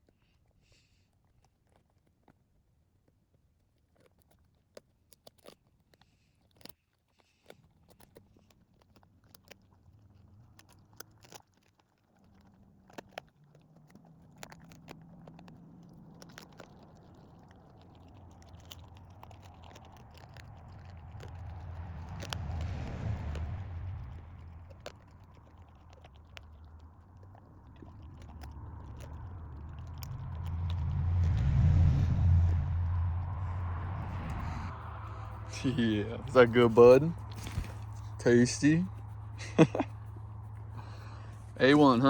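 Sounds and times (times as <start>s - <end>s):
dog crunching and chewing: 0.0s - 31.7s, 33.1s - 42.0s
low rumble: 15.0s - 42.0s.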